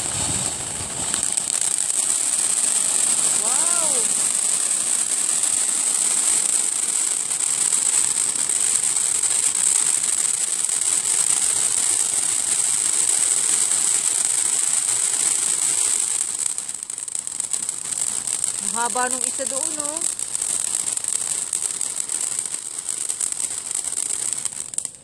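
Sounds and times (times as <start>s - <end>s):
firework fountain hissing: 0.0s - 25.0s.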